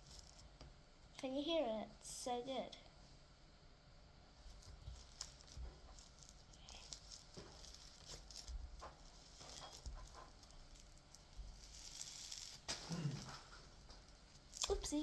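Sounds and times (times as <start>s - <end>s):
slime squishing with clicks: 4.7s - 15.0s.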